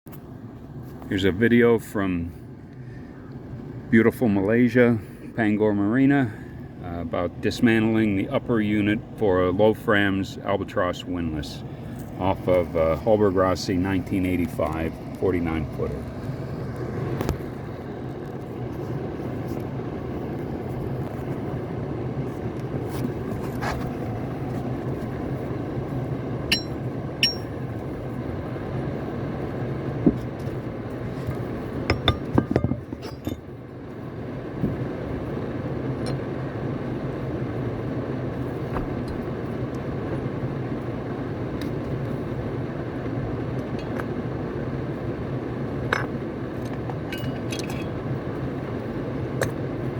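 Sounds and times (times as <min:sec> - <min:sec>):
steady low hum: 0:00.1 - 0:49.9
metal tools clinking and scraping: 0:26.5 - 0:27.6, 0:31.9 - 0:33.5, 0:47.1 - 0:47.9.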